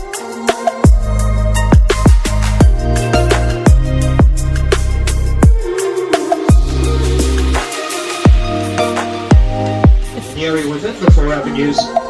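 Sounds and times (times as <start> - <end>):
deep kick drum hits: 1.7 - 2.9, 3.7 - 4.5, 5.4 - 5.7, 6.5 - 6.9, 8.3 - 8.7, 9.3 - 10.4
sustained bass notes: 6.5 - 7.7, 8.3 - 11.5.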